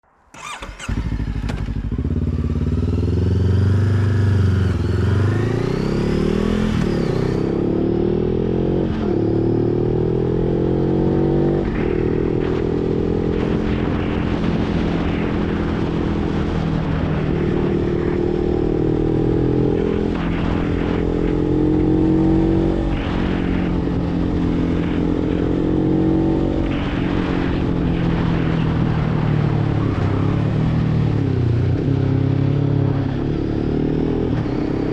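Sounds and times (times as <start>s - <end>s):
motorcycle engine accelerating: 0.3s - 34.9s.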